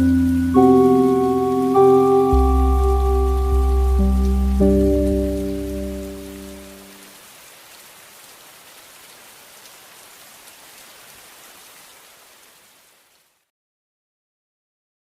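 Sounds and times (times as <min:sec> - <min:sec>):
soft ambient music: 0:00.0 - 0:07.0
steady rain hiss: 0:00.0 - 0:13.5.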